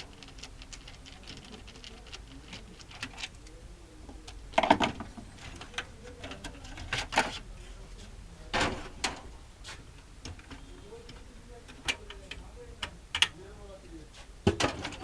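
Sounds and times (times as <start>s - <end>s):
knocks and clicks of plastic parts: 4.5s - 7.3s, 14.4s - 15.0s.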